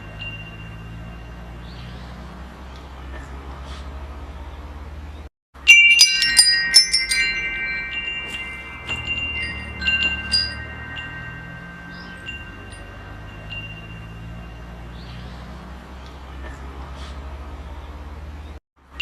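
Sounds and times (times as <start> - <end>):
wind chimes ringing: 0.0 - 2.6, 5.6 - 15.9.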